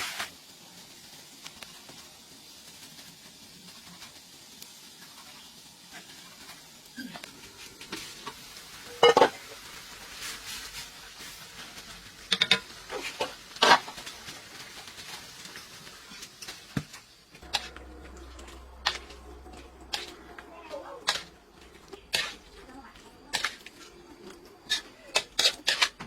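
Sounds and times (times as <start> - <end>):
faint sizzle of frying food: 0.0 - 26.0
utensil stirring in a pan: 0.0 - 26.0.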